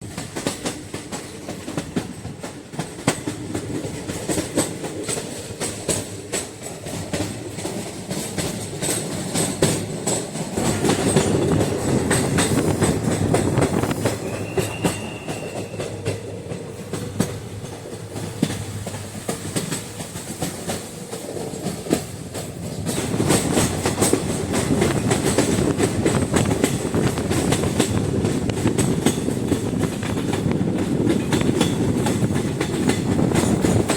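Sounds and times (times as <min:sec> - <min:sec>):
train wheels clicking over rails: 0:00.0 - 0:33.9
high squeal: 0:14.0 - 0:16.0.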